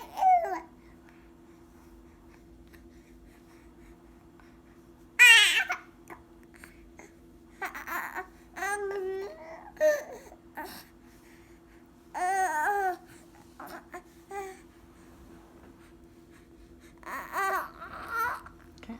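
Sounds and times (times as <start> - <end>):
baby babbling: 0.0 - 0.7, 5.2 - 5.8, 7.6 - 10.8, 12.2 - 13.0, 17.0 - 18.6
faint steady hum: 0.0 - 18.9.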